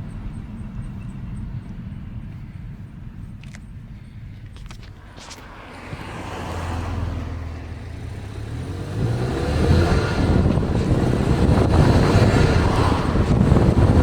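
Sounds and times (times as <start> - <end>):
road noise: 0.0 - 14.0
car engine accelerating: 4.6 - 14.0.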